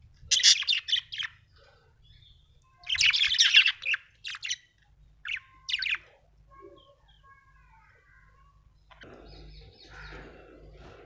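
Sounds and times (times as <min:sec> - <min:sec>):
steady low hum: 0:08.5 - 0:11.0
budgerigar chatter: 0:08.9 - 0:11.0.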